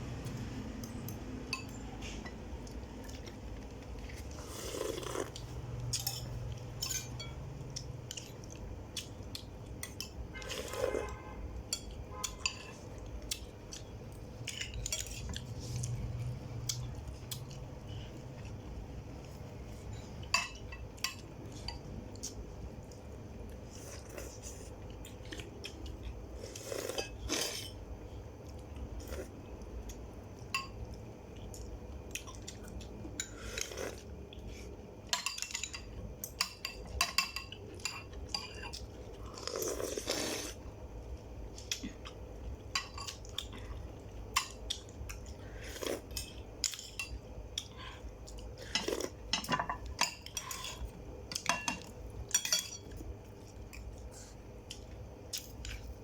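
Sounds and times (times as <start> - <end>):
steady low hum: 0.0 - 56.0
cutlery clinking on dishes: 6.0 - 7.4, 48.7 - 53.0.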